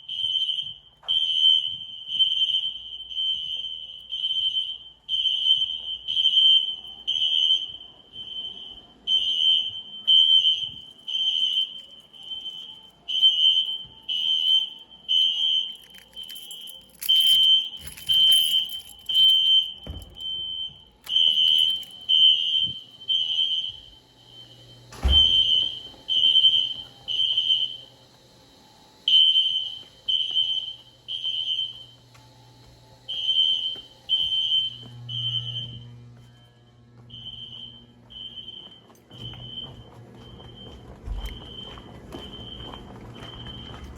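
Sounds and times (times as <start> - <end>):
fire alarm horns pulsing: 0.0 - 43.9.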